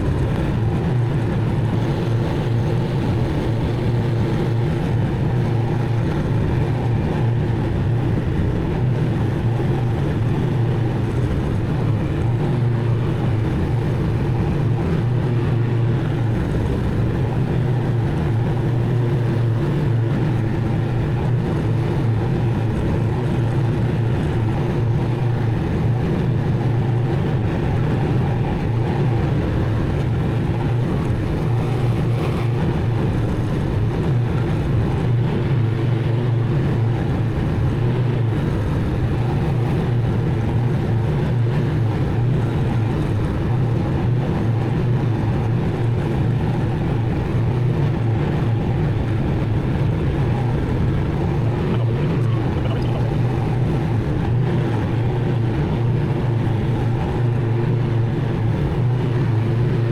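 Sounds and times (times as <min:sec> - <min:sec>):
mower engine running: 0:48.0 - 0:59.8.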